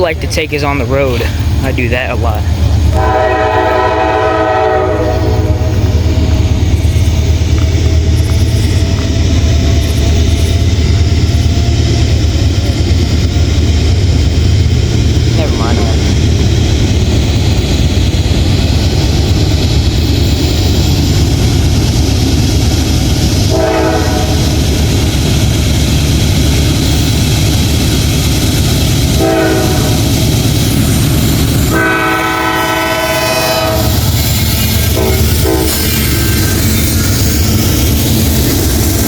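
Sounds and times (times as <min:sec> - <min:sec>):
train rumble and wheel clatter: 0:00.0 - 0:39.0
train horn: 0:02.9 - 0:05.8, 0:23.5 - 0:24.5, 0:29.1 - 0:30.1, 0:31.7 - 0:34.0, 0:34.9 - 0:35.8.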